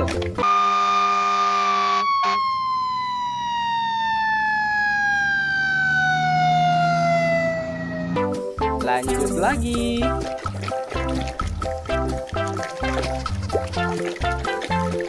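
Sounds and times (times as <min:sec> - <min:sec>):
fire truck siren winding down: 0:00.4 - 0:08.4.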